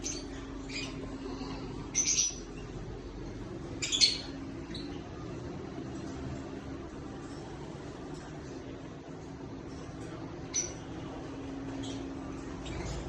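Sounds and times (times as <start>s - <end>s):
lovebirds chirping: 0.0s - 3.0s, 3.6s - 5.3s
steady low hum: 0.0s - 13.0s.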